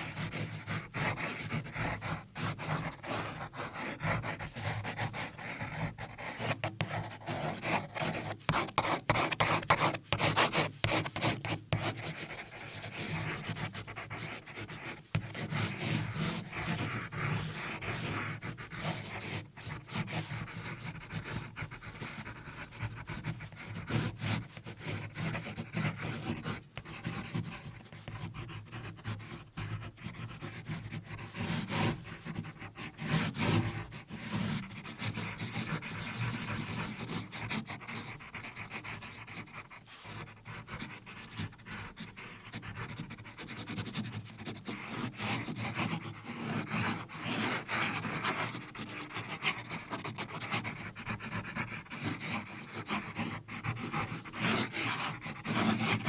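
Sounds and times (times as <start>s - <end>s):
close scratching and rubbing: 0.0s - 29.4s.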